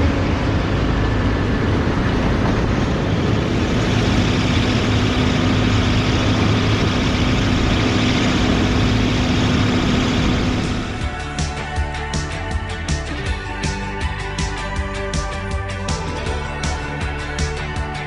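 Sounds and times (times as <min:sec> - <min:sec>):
diesel engine running under load: 0:00.0 - 0:18.0.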